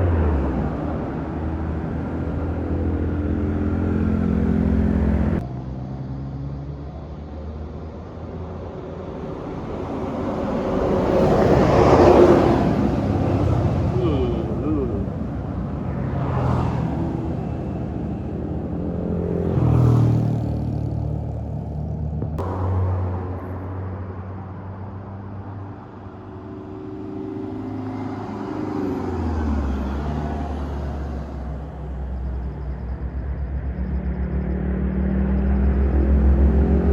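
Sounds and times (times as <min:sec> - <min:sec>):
road traffic passing: 0:00.0 - 0:36.9
heavy engine pulsing rumble: 0:13.2 - 0:15.8.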